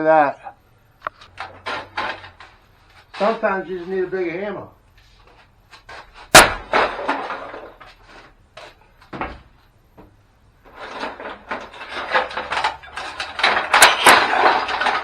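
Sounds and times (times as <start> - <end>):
plastic cracking and clattering: 10.7 - 15.0
plastic pieces rattling: 10.8 - 15.0.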